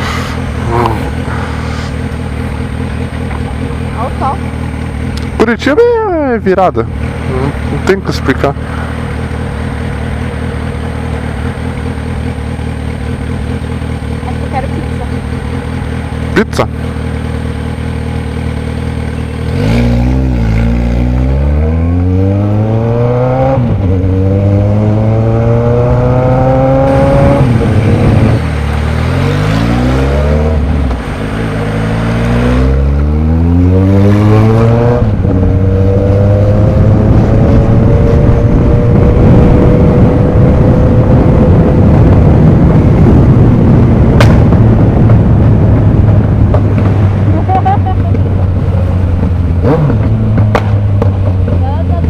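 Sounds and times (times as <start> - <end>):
motorcycle engine accelerating: 0.0 - 52.0
wind rush: 33.8 - 47.5.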